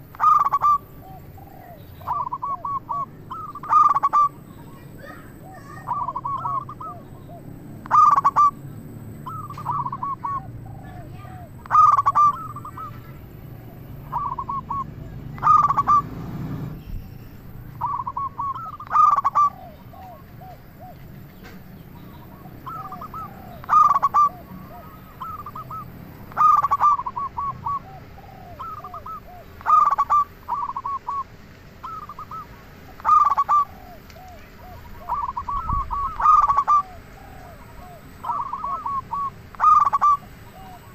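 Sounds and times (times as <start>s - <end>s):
dove cooing: 0.0s - 40.9s.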